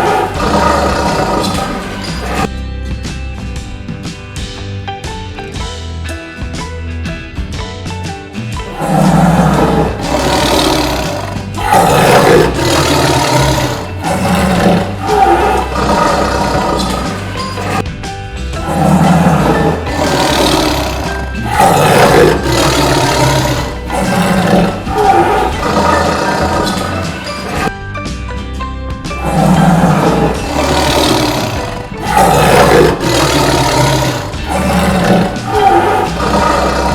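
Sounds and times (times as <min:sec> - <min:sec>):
tiger roaring: 0:00.0 - 0:02.5, 0:08.7 - 0:17.8, 0:18.6 - 0:27.7, 0:29.1 - 0:36.9
background music: 0:08.2 - 0:36.9.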